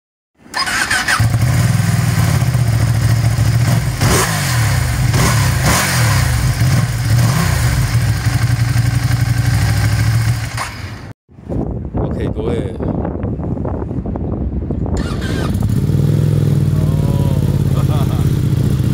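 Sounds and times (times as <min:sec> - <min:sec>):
motorcycle engine idling: 0:06.4 - 0:11.1, 0:15.7 - 0:18.9.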